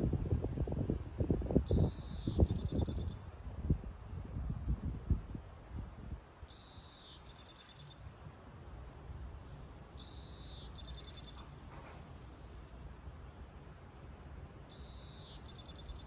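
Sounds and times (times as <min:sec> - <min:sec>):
finch singing buzzy twitters: 0:01.7 - 0:03.2, 0:06.5 - 0:08.0, 0:10.0 - 0:11.5, 0:14.7 - 0:16.0.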